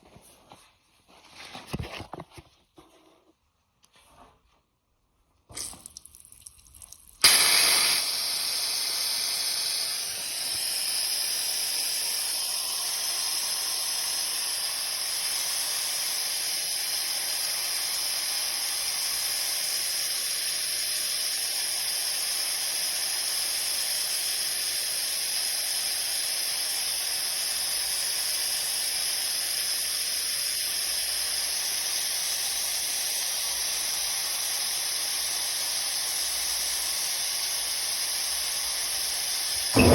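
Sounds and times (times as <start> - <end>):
compressed air hissing from valve: 7.2 - 39.9.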